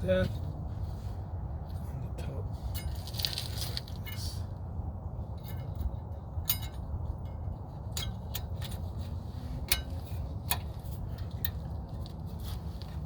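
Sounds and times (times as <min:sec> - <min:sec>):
steady low rumble: 0:00.0 - 0:13.0.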